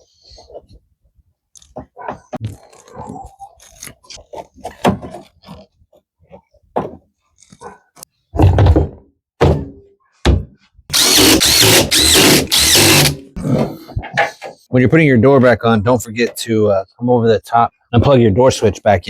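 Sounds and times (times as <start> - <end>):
power drill driving a screw: 10.9 - 13.2.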